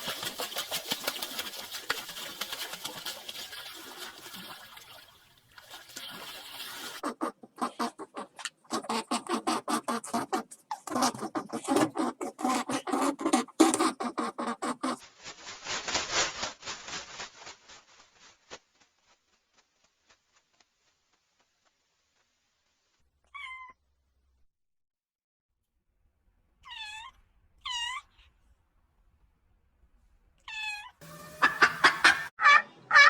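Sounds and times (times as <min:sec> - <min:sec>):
cat meow: 0:23.2 - 0:23.8, 0:26.6 - 0:28.2, 0:30.4 - 0:31.4.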